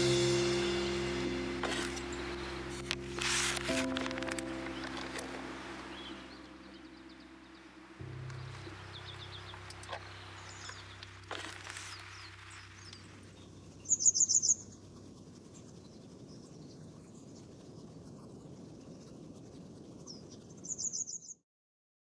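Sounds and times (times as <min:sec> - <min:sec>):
outdoor background noise: 0:00.0 - 0:21.4
small bird trilling: 0:08.2 - 0:15.0, 0:20.1 - 0:21.4.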